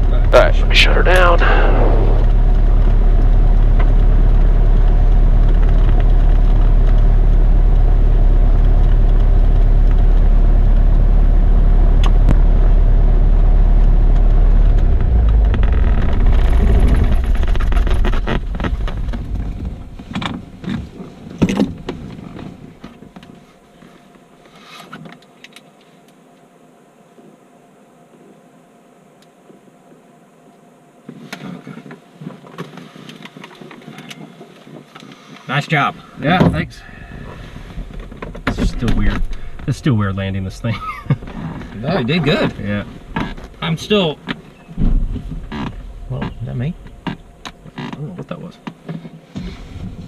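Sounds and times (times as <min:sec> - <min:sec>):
propeller plane engine idling: 0:00.0 - 0:22.8, 0:36.0 - 0:47.8.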